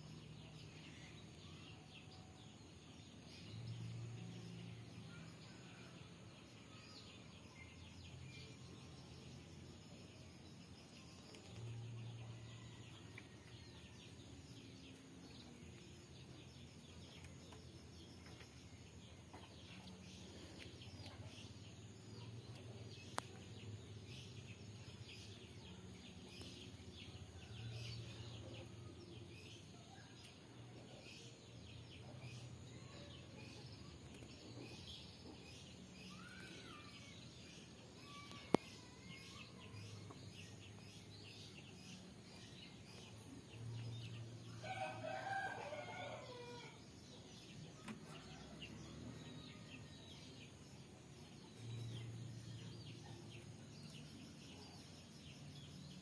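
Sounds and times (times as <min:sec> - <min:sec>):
rooster crowing: 0:44.6 - 0:46.8.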